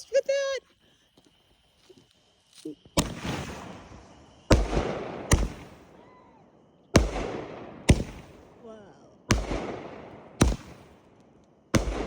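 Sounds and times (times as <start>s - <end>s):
firework hiss: 2.2s - 5.9s
firework bangs: 2.9s - 12.0s.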